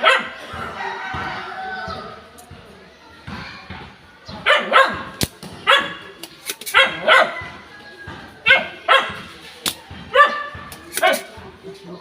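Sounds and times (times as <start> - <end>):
dog barking: 0.0 - 0.4, 4.4 - 5.1, 5.7 - 6.0, 6.7 - 7.5, 8.5 - 9.2, 10.1 - 11.3.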